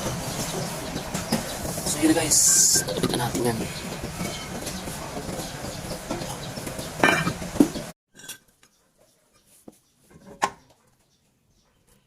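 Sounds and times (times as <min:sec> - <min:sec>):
steady background noise: 0:00.0 - 0:08.0
tools knocking on metal: 0:02.7 - 0:07.9.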